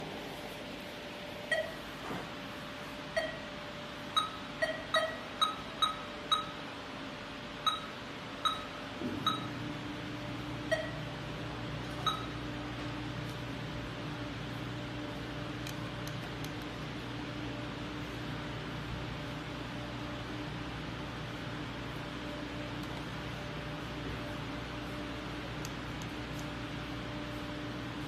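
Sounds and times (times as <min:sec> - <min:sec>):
steady low hum: 0:00.0 - 0:28.0
short electronic beeps: 0:01.5 - 0:01.8, 0:03.1 - 0:03.5, 0:04.1 - 0:06.6, 0:07.6 - 0:09.6, 0:10.7 - 0:11.0, 0:12.0 - 0:12.4.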